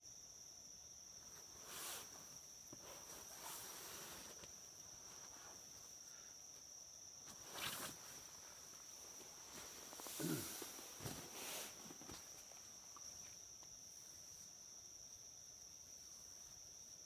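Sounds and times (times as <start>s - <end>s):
insects trilling: 0.0s - 17.0s
soft rustles: 1.2s - 14.6s.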